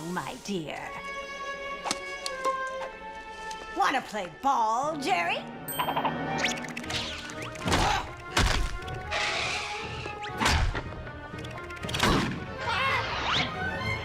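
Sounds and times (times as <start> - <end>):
cartoon orchestral music: 11.3 - 14.0.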